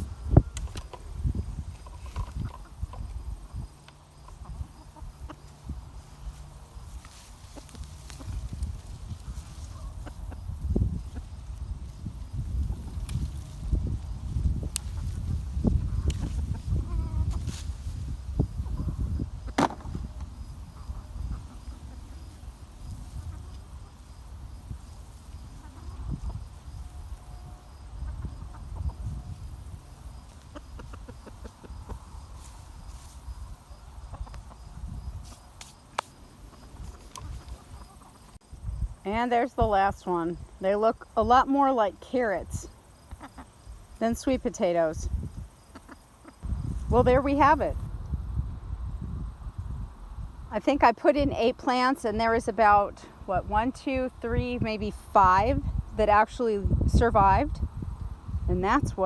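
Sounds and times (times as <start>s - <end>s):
chickens clucking: 0.0s - 47.9s.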